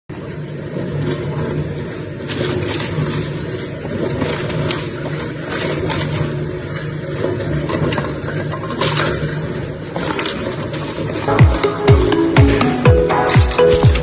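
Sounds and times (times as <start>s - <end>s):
industrial machine humming: 0.1s - 14.0s
knocks and rattles: 0.7s - 14.0s.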